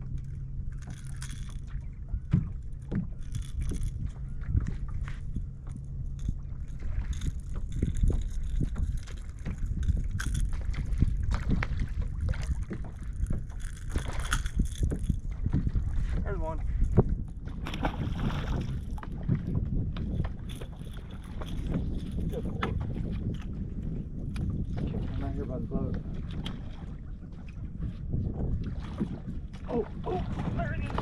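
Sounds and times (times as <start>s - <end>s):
low steady hum: 0.0s - 31.0s
water lapping against boat hull: 0.0s - 31.0s
wind on microphone: 0.0s - 31.0s.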